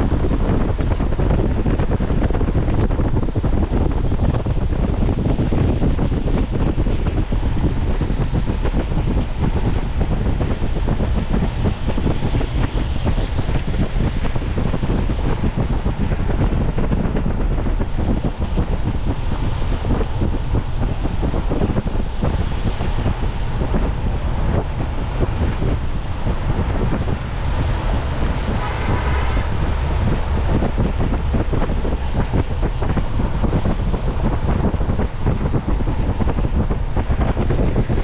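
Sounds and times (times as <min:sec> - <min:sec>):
car rumbling on road: 0:00.0 - 0:38.0
wind buffeting microphone: 0:00.0 - 0:38.0.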